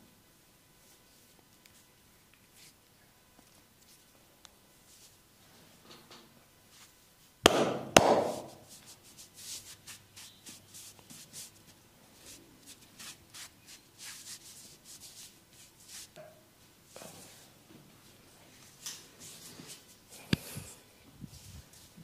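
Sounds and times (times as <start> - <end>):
sharp slaps on skin: 7.5 - 8.6
hands rubbing skin in massage: 8.3 - 16.1.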